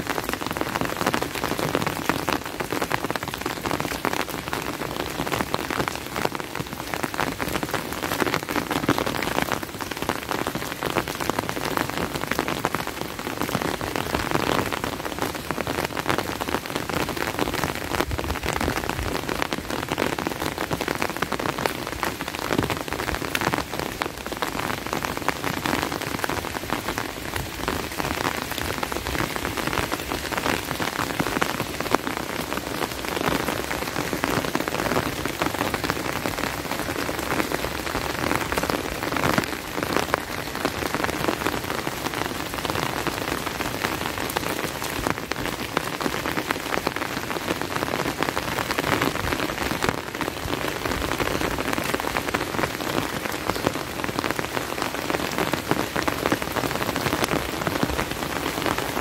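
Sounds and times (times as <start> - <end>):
steady rain patter: 0.0 - 59.0.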